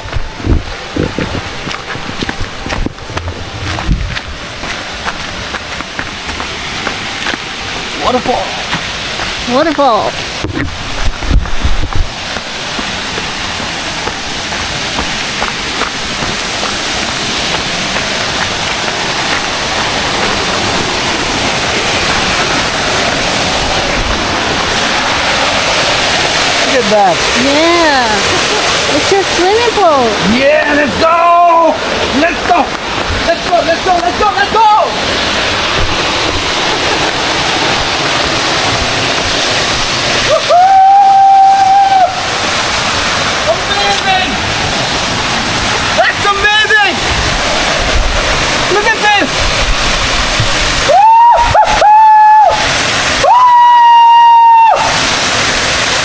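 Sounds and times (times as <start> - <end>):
waterfall rushing water: 0.0 - 56.0
person shouting woohoo: 40.3 - 42.2, 50.9 - 52.6, 53.2 - 55.0.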